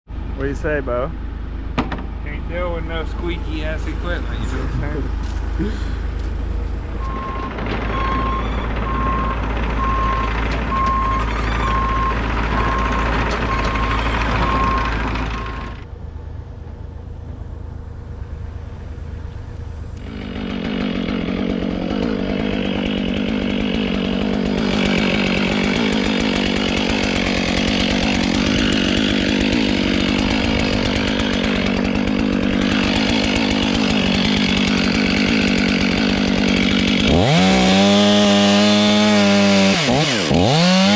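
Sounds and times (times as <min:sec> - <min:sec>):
heavy machine engine running: 0:01.6 - 0:39.2
chainsaw running: 0:02.8 - 0:06.3, 0:07.0 - 0:11.1, 0:11.8 - 0:15.8, 0:20.0 - 0:40.9
regular beeping: 0:07.0 - 0:15.8.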